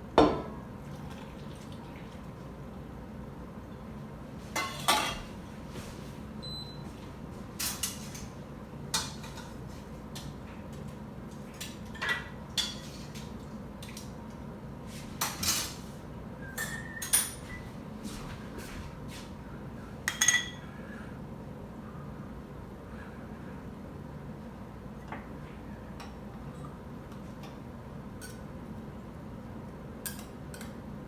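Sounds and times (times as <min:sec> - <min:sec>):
glass jars clinking: 0:20.1 - 0:20.6.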